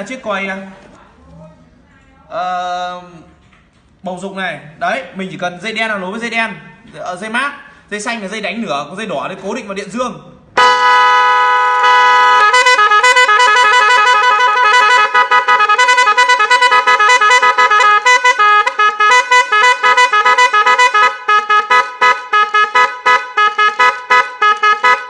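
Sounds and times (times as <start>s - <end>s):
electronic melody horn: 10.6s - 25.0s.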